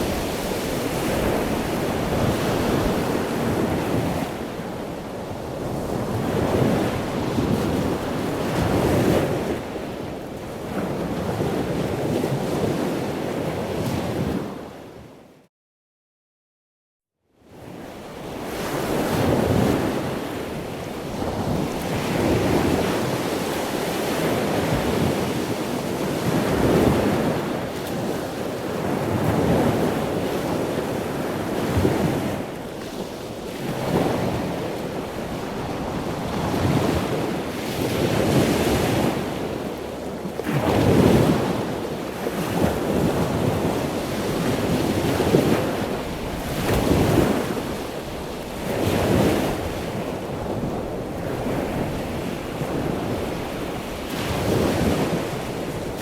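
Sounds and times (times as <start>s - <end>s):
wind: 0.0s - 15.5s, 17.2s - 56.0s
waves breaking: 29.1s - 56.0s.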